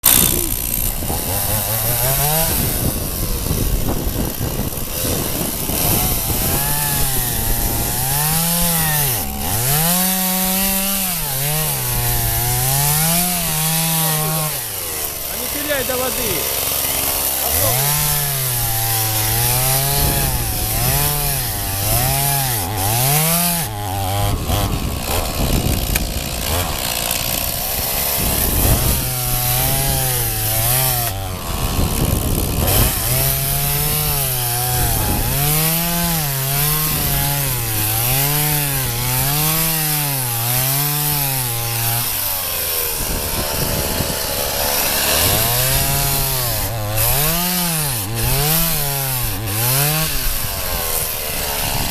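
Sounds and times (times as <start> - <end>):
chainsaw cutting ice: 0.0 - 51.9
harsh gritty cutting noise: 0.0 - 51.9.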